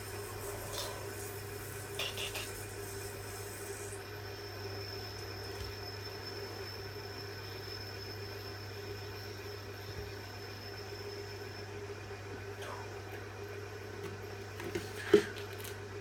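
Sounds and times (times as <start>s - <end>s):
fidget spinners whirring: 0.0s - 4.1s.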